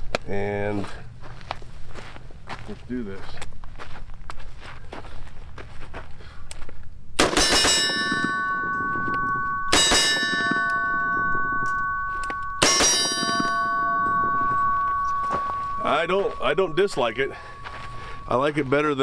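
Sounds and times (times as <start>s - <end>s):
gunshots: 7.2s - 11.5s
steel target ringing: 7.2s - 19.0s.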